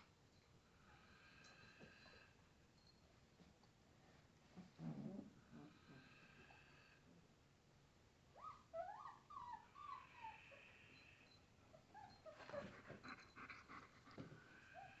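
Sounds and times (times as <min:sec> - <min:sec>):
puppies whimpering: 0:08.4 - 0:13.9.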